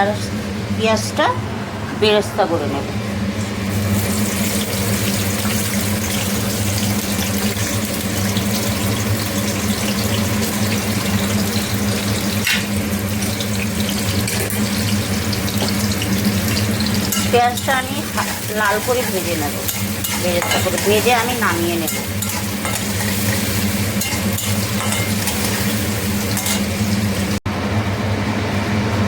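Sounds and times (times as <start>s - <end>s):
steady low hum: 0.0s - 29.0s
onions sizzling in hot oil: 3.7s - 27.4s.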